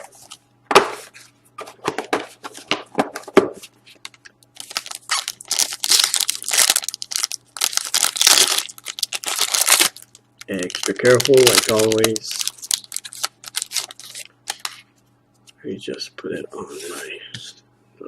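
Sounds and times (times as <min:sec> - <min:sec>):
wrapper crinkling and tearing: 0:04.6 - 0:14.8.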